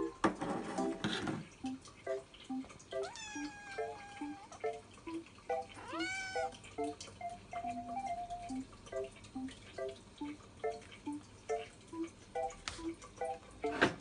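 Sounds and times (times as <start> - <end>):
kitten meowing: 3.0 - 4.5, 5.8 - 6.5.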